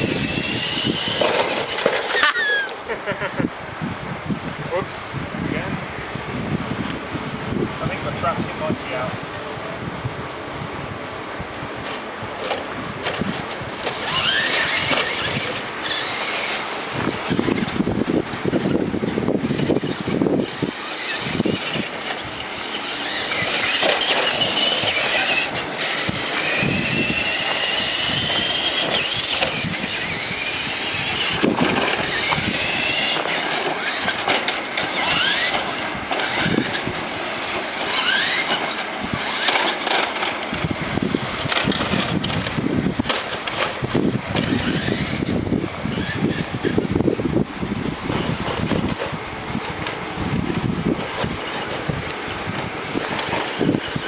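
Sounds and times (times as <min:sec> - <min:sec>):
truck clicks and knocks: 0:00.0 - 0:02.8, 0:19.5 - 0:54.0
remote-control truck motor whining: 0:00.0 - 0:03.4, 0:11.8 - 0:54.0.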